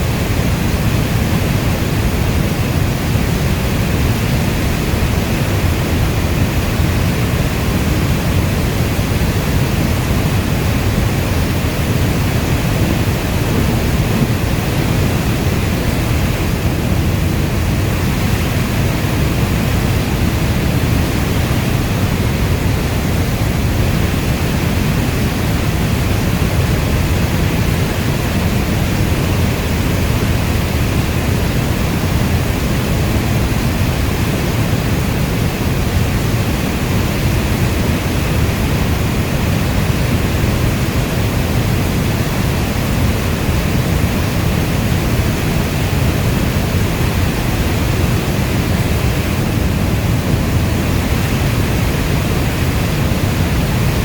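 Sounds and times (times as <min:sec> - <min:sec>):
heavy rain hiss: 0:00.0 - 0:54.0.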